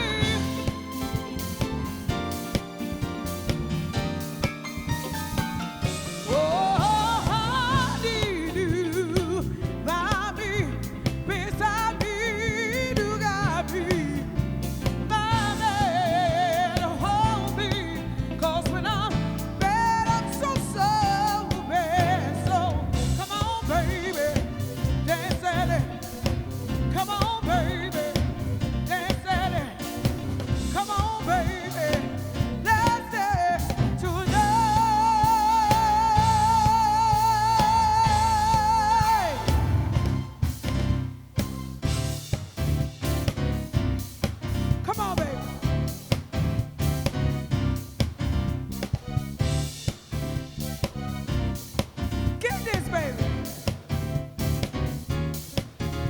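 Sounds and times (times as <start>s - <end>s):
person singing lead vocal: 0.0s - 1.0s, 6.1s - 40.1s, 52.4s - 53.9s
soul band playing: 0.0s - 56.0s.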